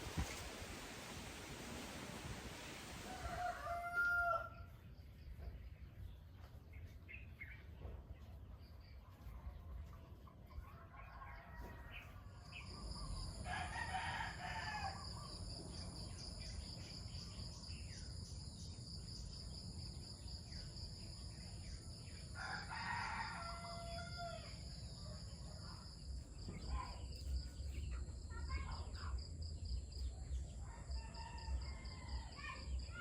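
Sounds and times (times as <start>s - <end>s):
rooster crowing: 3.0s - 4.7s, 13.4s - 15.1s, 22.4s - 24.5s.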